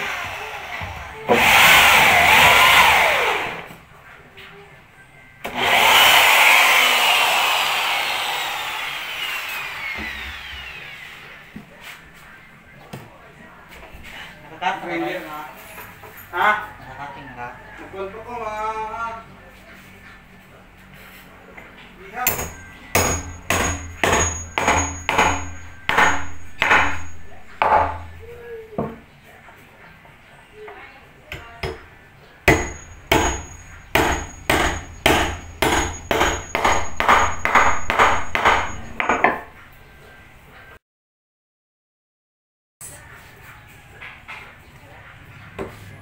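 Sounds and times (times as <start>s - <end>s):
power tool whine winding down: 5.5s - 11.4s
hammer blows on wood: 22.3s - 28.2s, 32.5s - 39.1s.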